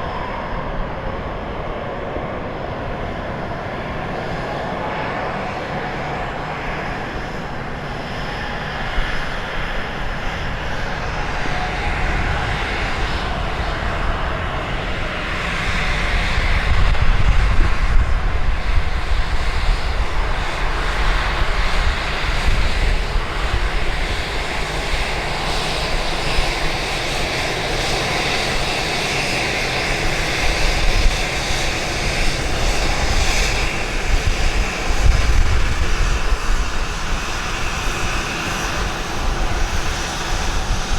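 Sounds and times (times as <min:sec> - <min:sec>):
jet engine roar: 0:00.0 - 0:40.9
wind buffeting microphone: 0:00.0 - 0:40.9.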